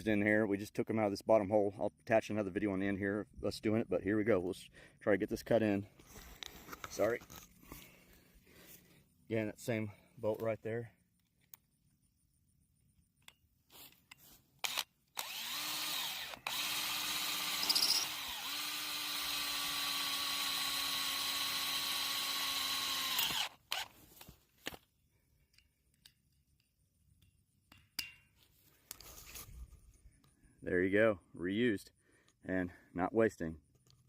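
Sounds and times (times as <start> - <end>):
power drill driving a screw: 14.6 - 24.0.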